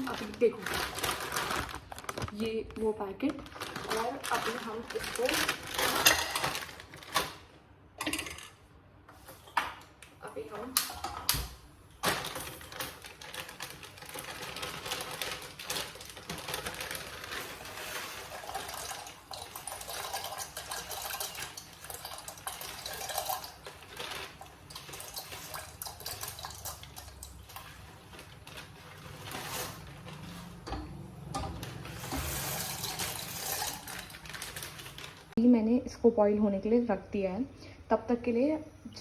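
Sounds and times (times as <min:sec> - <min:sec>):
dry pasta clicking and clattering: 0:00.0 - 0:07.4, 0:12.0 - 0:35.4
water sloshing in a pot: 0:13.9 - 0:35.4.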